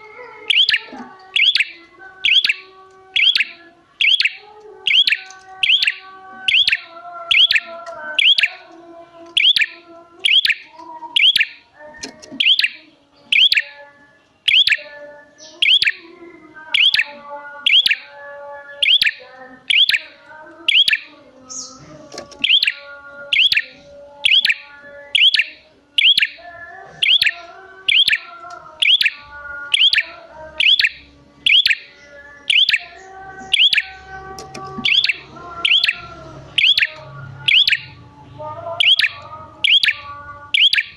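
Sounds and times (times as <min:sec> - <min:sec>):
bird chirping loudly: 0:00.4 - 0:08.6, 0:09.4 - 0:13.8, 0:14.4 - 0:16.1, 0:16.7 - 0:38.0, 0:38.8 - 0:40.9
low bird warbling: 0:00.4 - 0:08.6, 0:09.4 - 0:13.7, 0:22.4 - 0:38.0.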